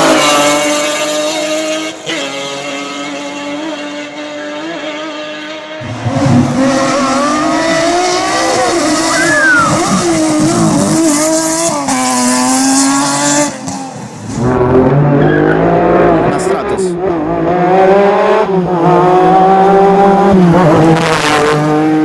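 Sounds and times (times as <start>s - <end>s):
race car engine revving: 0.0s - 22.0s
tyre and road noise: 5.8s - 18.1s
tyre squeal: 6.4s - 10.8s, 15.2s - 15.7s.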